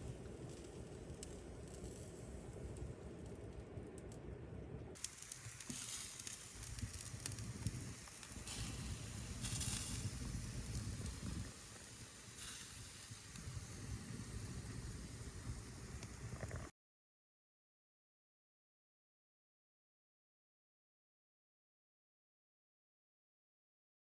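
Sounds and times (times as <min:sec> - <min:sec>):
wood fire crackling: 0:00.0 - 0:16.7.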